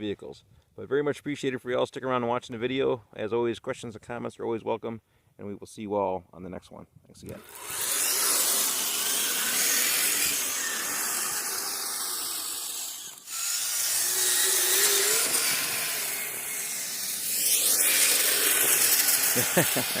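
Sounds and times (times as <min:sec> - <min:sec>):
electric motors and gears whirring: 0:07.3 - 0:20.0.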